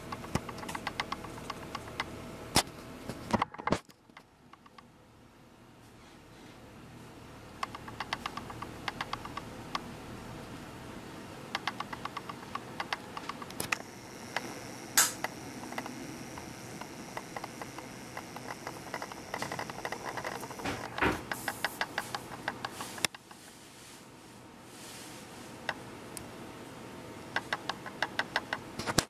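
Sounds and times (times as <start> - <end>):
camera clicking and rattling: 0.1 - 2.1, 7.6 - 9.4, 11.6 - 22.8
faint high whine: 7.0 - 23.1.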